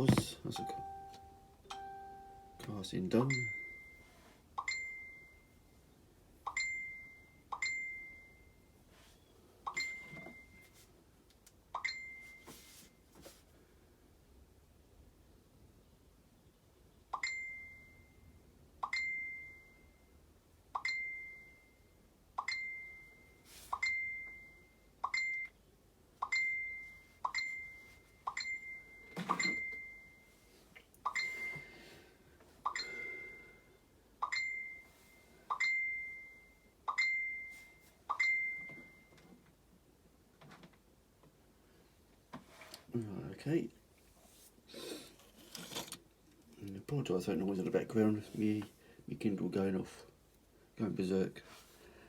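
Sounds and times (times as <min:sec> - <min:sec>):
rustling handling noise: 0:00.0 - 0:00.5.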